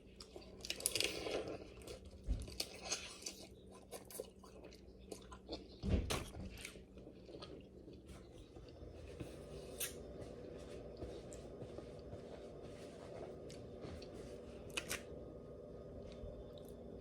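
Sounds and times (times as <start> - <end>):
chewing and crunching crab: 0.0 - 8.8.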